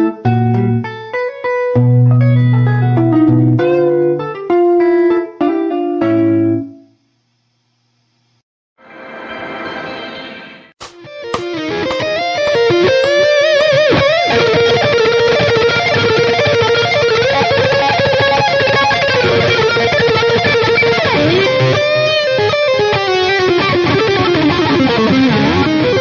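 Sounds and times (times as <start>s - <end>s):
electric guitar lead: 0.0s - 6.2s, 11.5s - 26.0s.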